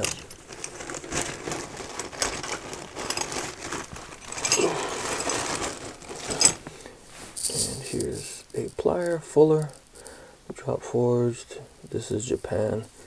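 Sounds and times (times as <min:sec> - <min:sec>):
hand tools clicking and tapping: 0:00.0 - 0:06.8
crinkling rustle: 0:00.0 - 0:10.3.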